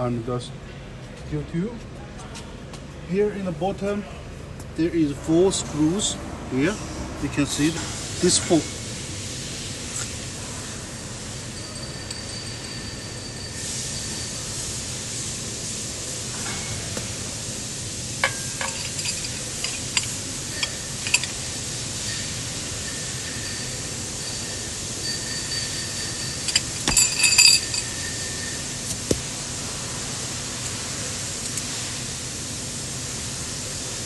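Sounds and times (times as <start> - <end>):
steady hiss: 7.6 - 34.0
metallic clinks of tools on steel: 18.2 - 21.4, 22.0 - 28.6.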